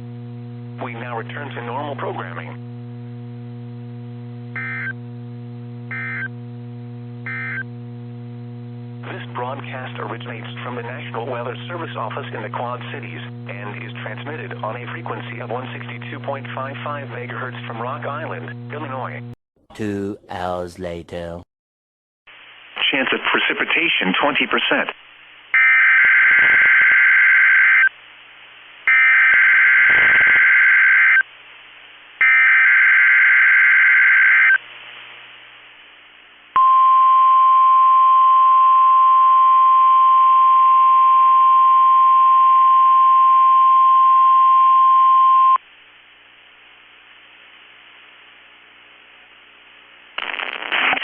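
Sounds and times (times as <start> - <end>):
faint radio hiss: 9.0 - 19.2, 22.3 - 25.5, 34.6 - 36.5, 45.7 - 51.0.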